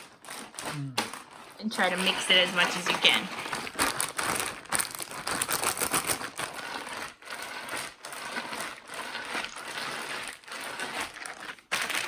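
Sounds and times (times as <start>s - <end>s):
ice cubes rattling: 0.0s - 12.0s
plastic bag crinkling: 0.0s - 12.0s.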